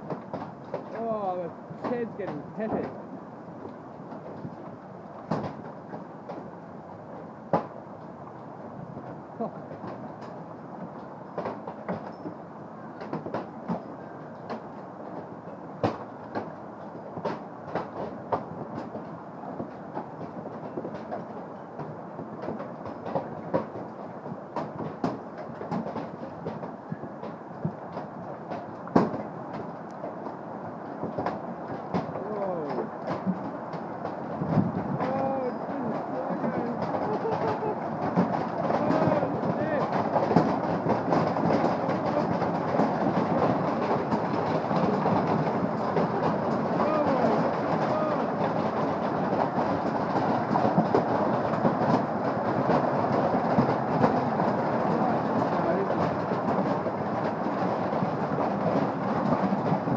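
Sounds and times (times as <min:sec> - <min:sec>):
hailstones clattering: 0:31.0 - 0:59.9.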